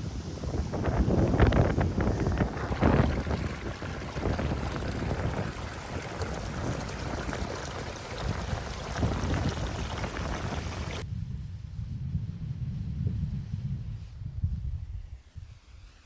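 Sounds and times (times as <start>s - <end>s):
hiss of rushing water: 0.0s - 11.0s
wind buffeting microphone: 0.0s - 15.1s.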